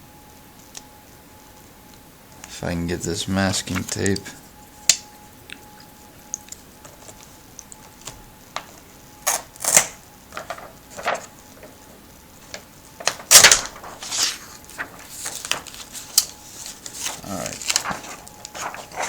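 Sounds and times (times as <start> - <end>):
masking tape pulled and torn: 9.2 - 10.0.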